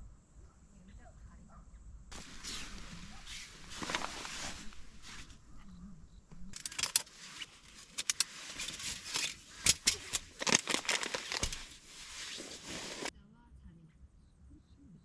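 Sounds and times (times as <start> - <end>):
rustling handling noise: 2.1 - 13.1
sharp crinkling clicks: 2.1 - 13.1.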